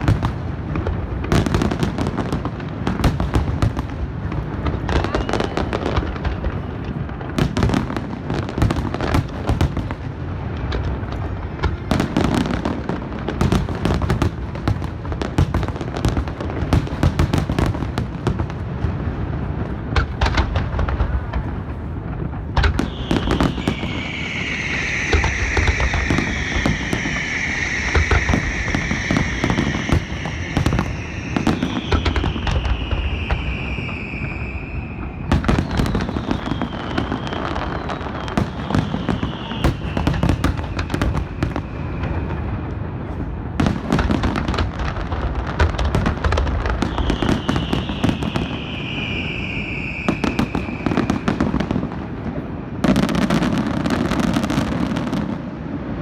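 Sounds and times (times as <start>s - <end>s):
falling firework whistles: 0.0s - 56.0s
fireworks crackling: 0.0s - 56.0s
firework shells booming: 19.0s - 55.3s.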